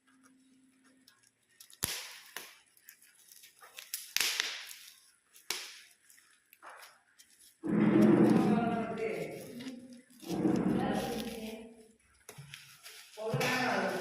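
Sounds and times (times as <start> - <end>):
packaging snapping and rustling: 1.0 - 7.6.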